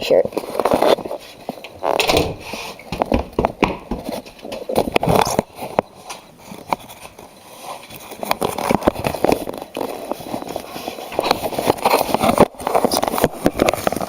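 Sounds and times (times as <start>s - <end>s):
plastic tub rustling and knocking: 0.3s - 5.9s
footsteps: 0.4s - 14.0s.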